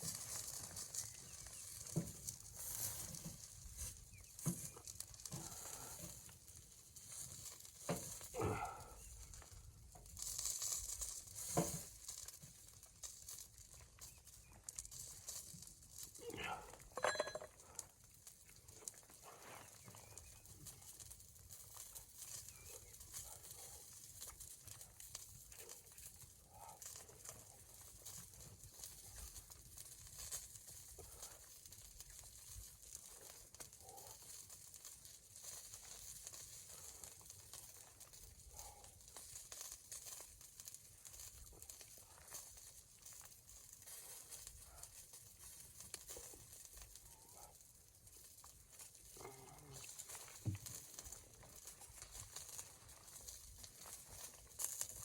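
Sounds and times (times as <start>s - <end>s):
soft crackles and rustles: 0.0s - 55.0s.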